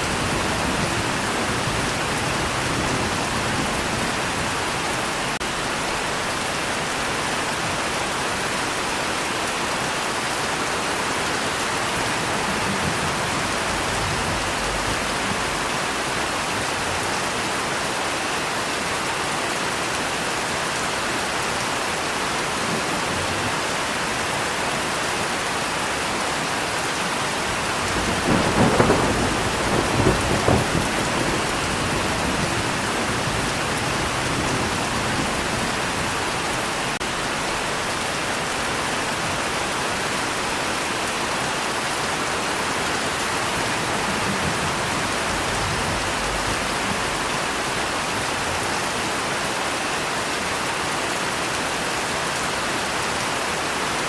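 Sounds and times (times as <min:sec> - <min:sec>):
steady rain falling: 0:00.0 - 0:54.0
rolling thunder: 0:11.9 - 0:16.2, 0:27.5 - 0:36.8, 0:43.3 - 0:47.8.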